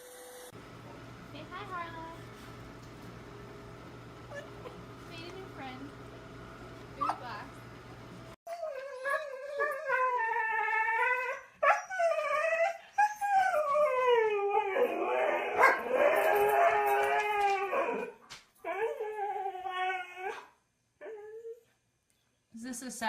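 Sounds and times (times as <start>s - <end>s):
dog howling: 8.5s - 21.6s.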